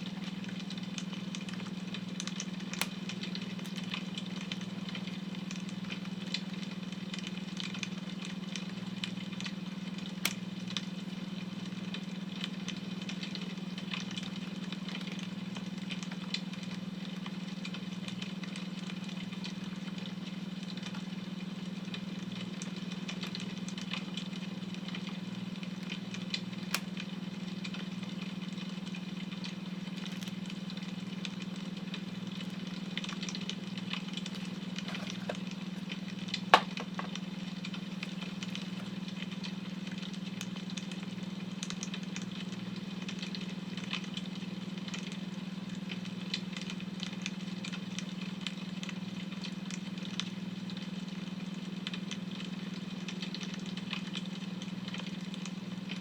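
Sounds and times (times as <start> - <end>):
wood fire crackling: 0.3 - 6.4, 20.9 - 42.4.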